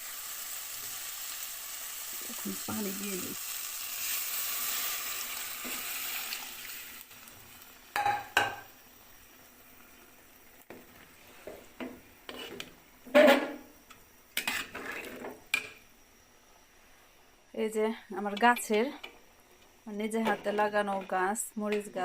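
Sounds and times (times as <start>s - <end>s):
food sizzling in a pot: 0.0s - 17.5s
spoon scraping and knocking a pot: 11.8s - 13.6s.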